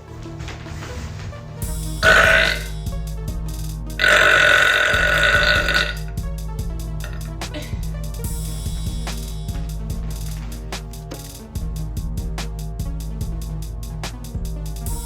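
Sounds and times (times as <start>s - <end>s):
background music with a beat: 0.0s - 15.0s.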